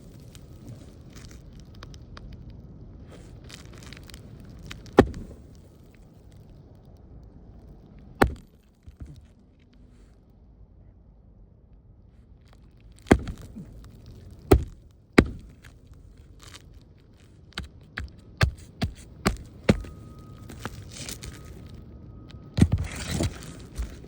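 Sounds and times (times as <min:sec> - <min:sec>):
knocks and scrapes on shingle roof: 0:03.5 - 0:05.6, 0:08.2 - 0:09.3, 0:13.0 - 0:15.8, 0:17.6 - 0:21.6, 0:22.6 - 0:24.0.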